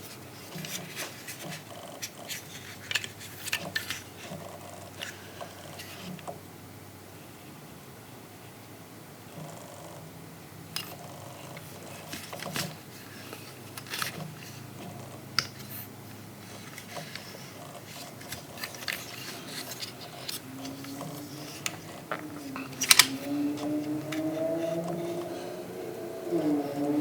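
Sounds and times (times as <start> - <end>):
plastic toy parts clicking: 2.3 - 4.3, 13.7 - 14.5, 17.9 - 23.3
low rising tone: 20.4 - 27.0.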